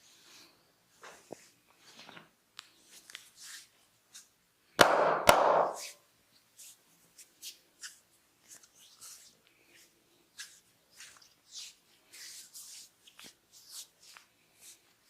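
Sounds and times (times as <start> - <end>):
hands rubbing hair and skin: 2.7 - 4.4, 5.4 - 15.0
loud sharp crack: 4.8 - 5.8.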